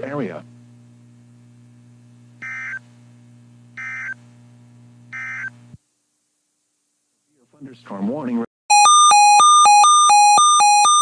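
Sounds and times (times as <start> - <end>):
low steady hum: 0.0 - 8.2.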